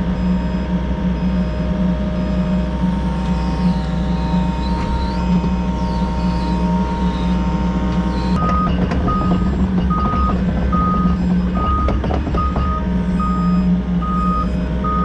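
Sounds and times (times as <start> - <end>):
diesel engine running: 0.0 - 15.0
backup alarm beeping: 0.1 - 15.0
knocks and rattles: 8.4 - 12.9.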